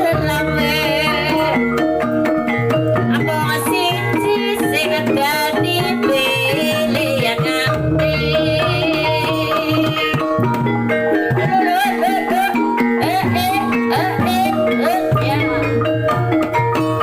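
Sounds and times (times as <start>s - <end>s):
hand-drum strokes: 0.0s - 17.0s
wavering high melody: 0.0s - 17.0s.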